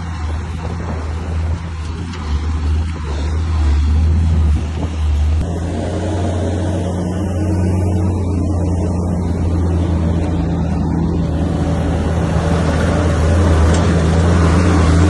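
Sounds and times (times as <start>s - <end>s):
bulldozer diesel engine running: 0.0s - 15.0s.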